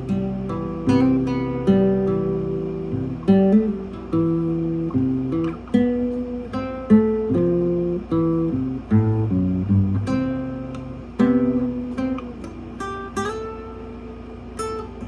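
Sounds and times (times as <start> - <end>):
acoustic guitar plucked notes: 0.0 - 15.0.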